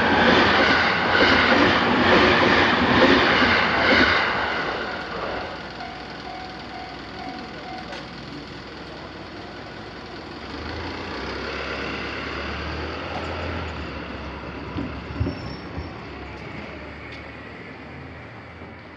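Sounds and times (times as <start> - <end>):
vehicle engine hum: 4.1 - 18.9.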